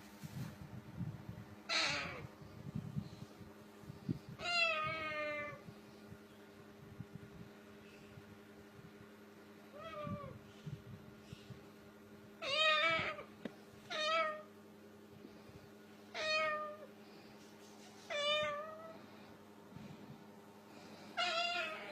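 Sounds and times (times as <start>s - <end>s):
cat meowing: 1.7s - 2.3s, 4.4s - 5.6s, 12.4s - 13.3s, 13.9s - 14.5s, 16.1s - 16.9s, 18.1s - 18.9s, 21.2s - 21.9s.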